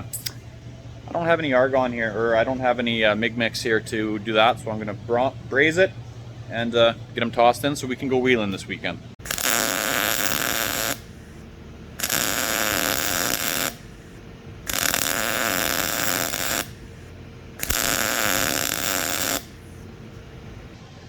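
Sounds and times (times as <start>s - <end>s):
metal cutting tool running: 9.2s - 20.8s.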